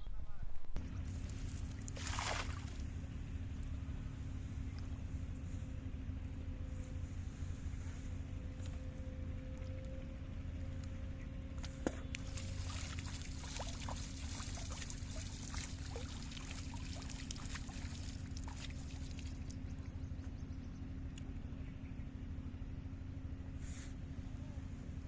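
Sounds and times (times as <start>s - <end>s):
steady low drone: 0.8s - 25.0s
water trickling and dripping: 12.2s - 20.0s.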